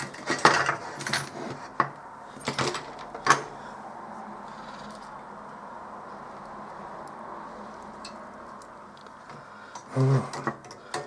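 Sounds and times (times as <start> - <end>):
tools clicking and knocking: 0.0 - 3.5, 9.7 - 11.0.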